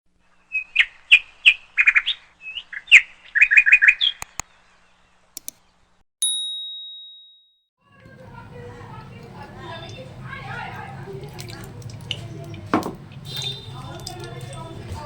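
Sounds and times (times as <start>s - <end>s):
high bird chirps: 0.4s - 4.7s
short clicks: 4.2s - 4.5s, 5.4s - 5.6s
bright ding: 6.2s - 7.5s.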